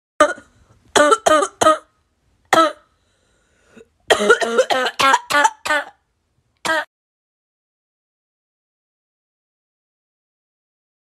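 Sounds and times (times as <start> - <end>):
person coughing comically: 2.5 - 2.9, 4.1 - 6.0, 6.7 - 6.9.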